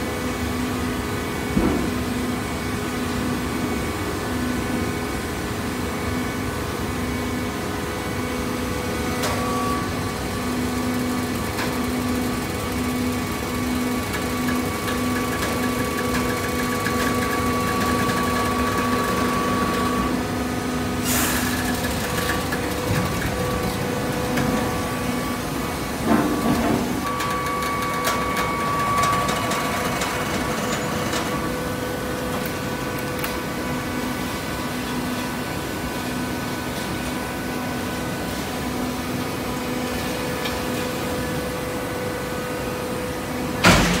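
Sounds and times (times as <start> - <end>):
baler motor and pump humming: 0.0 - 44.0.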